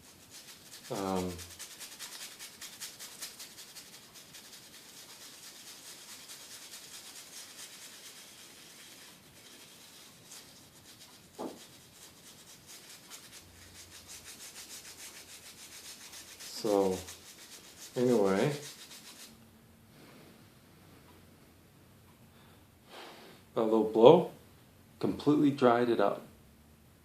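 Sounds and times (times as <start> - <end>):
brush scrubbing circuit board: 0.0 - 19.4.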